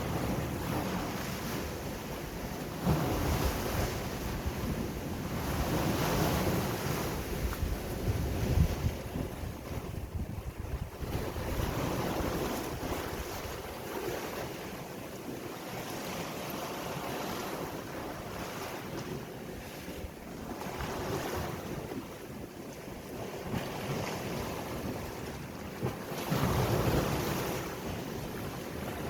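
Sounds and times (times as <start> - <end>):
sea waves washing: 0.0 - 9.9
wind buffeting microphone: 0.0 - 14.6.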